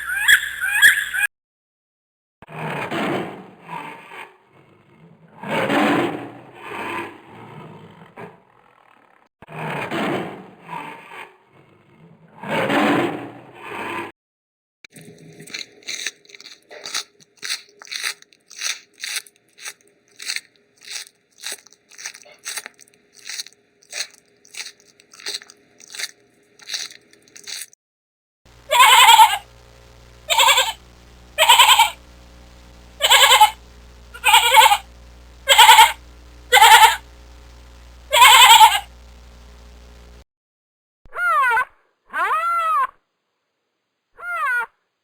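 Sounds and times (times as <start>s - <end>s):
loud bleats: 28.7s - 29.4s, 30.3s - 30.8s, 31.4s - 32.0s, 33.0s - 33.6s, 34.2s - 34.9s, 35.5s - 37.0s, 38.1s - 38.9s.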